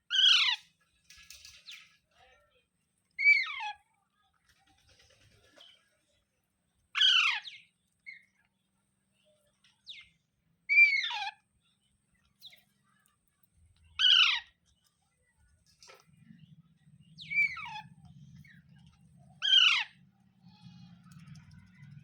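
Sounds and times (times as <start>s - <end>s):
parrot calls: 19.4s - 20.0s.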